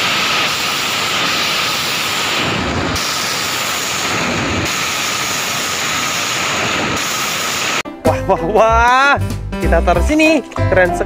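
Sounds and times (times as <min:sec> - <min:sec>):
loud steady rushing hiss: 0:00.0 - 0:07.8.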